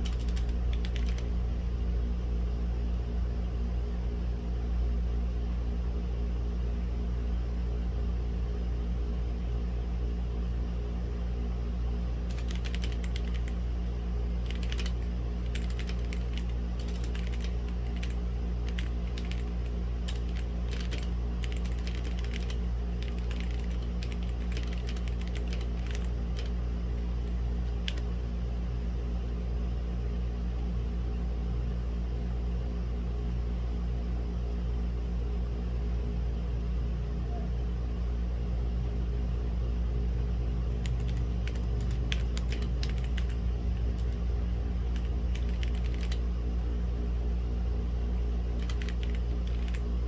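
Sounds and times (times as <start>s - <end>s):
mechanical keyboard typing: 0.0s - 1.3s, 12.0s - 28.2s, 40.8s - 44.2s, 44.8s - 46.3s, 48.3s - 49.9s
low background hum: 0.0s - 50.0s.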